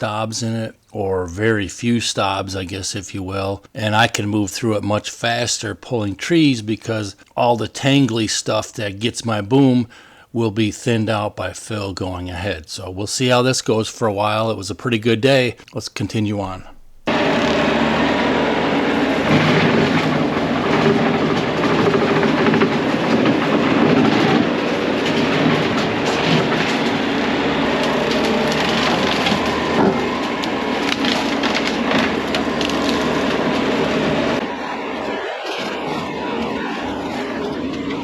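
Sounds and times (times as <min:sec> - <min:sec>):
diesel heavy equipment running: 0:16.4 - 0:38.0
wood cracking and snapping: 0:19.3 - 0:36.4.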